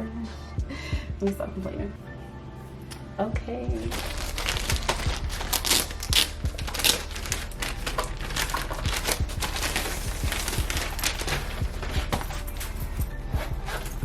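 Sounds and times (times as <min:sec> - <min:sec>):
plastic packaging crinkling: 0:03.9 - 0:12.8.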